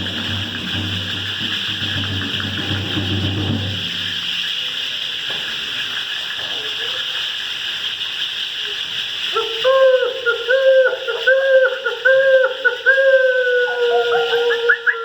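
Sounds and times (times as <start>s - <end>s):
steady hiss: 0.0s - 15.0s
owl-like hooting call: 9.3s - 15.0s.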